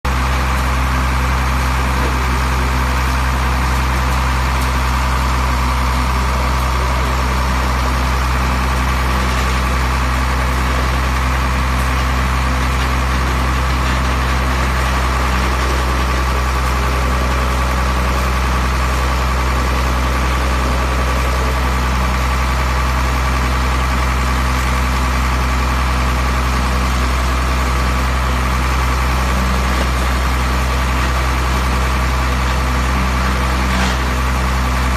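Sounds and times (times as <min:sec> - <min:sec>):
wood crusher machine droning: 0:00.1 - 0:34.9.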